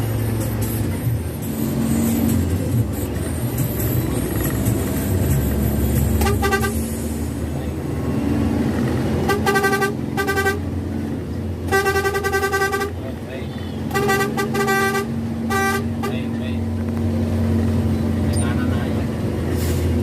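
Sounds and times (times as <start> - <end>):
bus engine droning: 0.0 - 20.0
fluttering bus horn blasts: 6.1 - 7.1, 9.2 - 10.7, 11.7 - 16.4.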